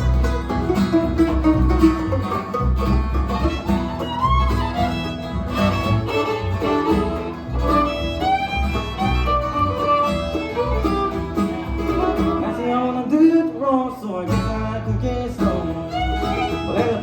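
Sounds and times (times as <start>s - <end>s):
fiddle with sliding notes: 0.0s - 13.0s, 15.4s - 17.0s
low bass line: 0.0s - 13.0s, 14.3s - 17.0s
banjo and guitar: 0.0s - 17.0s.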